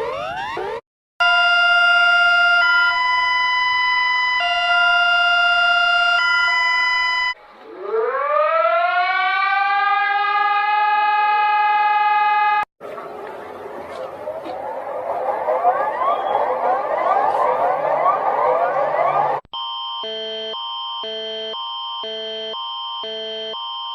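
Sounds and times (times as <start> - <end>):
siren wailing: 0.0 - 23.6
electronic two-tone alarm: 0.1 - 7.4, 15.6 - 23.9.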